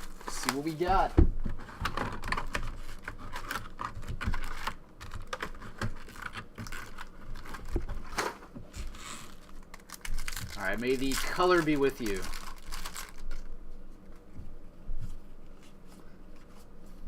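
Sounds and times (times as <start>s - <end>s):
card packs crinkling: 0.0s - 13.6s.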